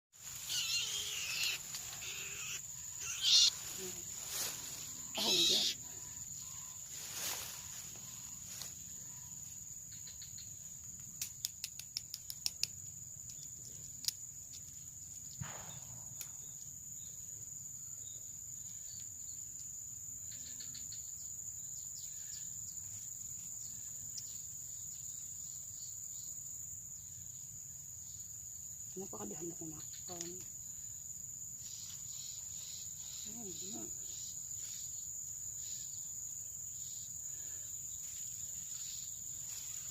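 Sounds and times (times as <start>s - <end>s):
high-pitched insect drone: 0.2s - 10.8s, 27.0s - 39.9s.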